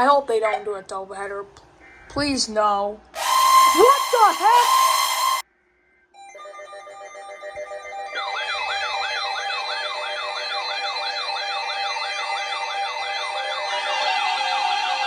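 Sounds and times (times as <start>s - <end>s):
electronic siren yelp: 3.2s - 5.4s, 6.3s - 15.0s
held electronic tones: 3.2s - 5.4s, 6.2s - 15.0s.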